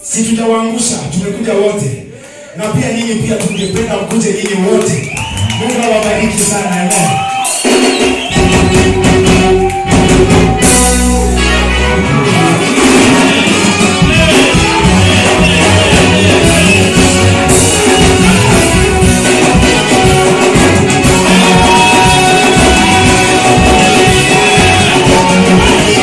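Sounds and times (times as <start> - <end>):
singing over band music: 12.3 - 26.0.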